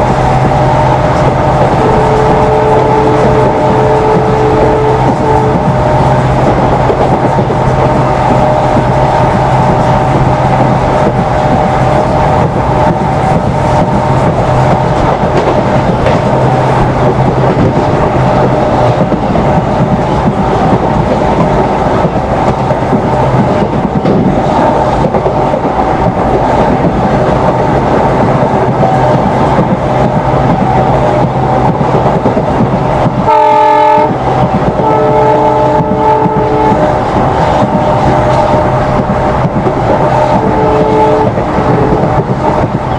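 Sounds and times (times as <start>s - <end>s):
diesel locomotive engine hum: 0.0s - 42.9s
train coaches running on track: 0.0s - 42.9s.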